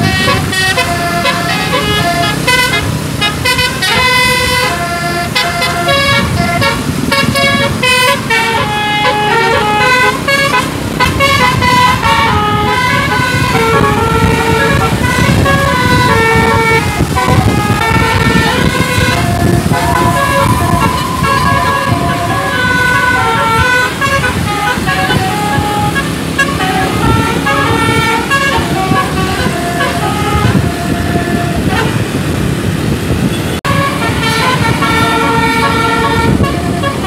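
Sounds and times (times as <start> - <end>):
musical bus air horn: 0.0 - 37.0
steady low rumble: 9.4 - 26.0.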